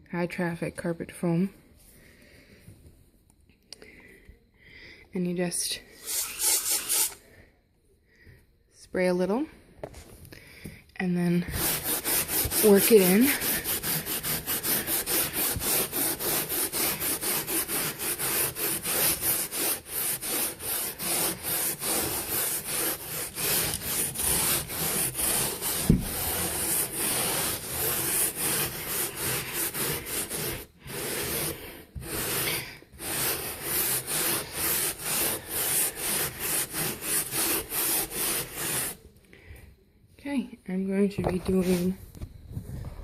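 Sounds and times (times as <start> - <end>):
scrubbing carpet foam into carpet: 11.5 - 39.0.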